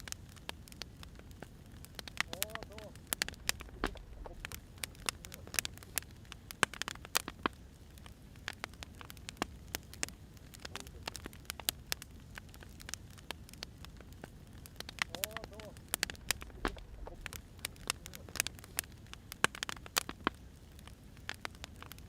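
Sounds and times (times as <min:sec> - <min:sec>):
wood fire crackling: 0:00.0 - 0:22.0.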